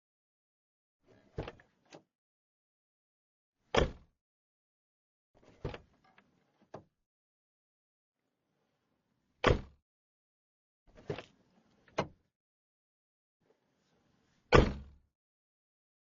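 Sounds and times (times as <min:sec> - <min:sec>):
car door slamming: 0:14.6 - 0:14.8.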